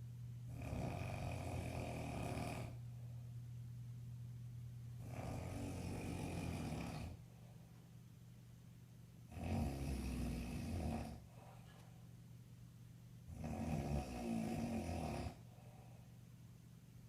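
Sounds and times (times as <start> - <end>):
man snoring: 0.5 - 2.8, 5.0 - 7.2, 9.3 - 11.3, 13.3 - 15.4.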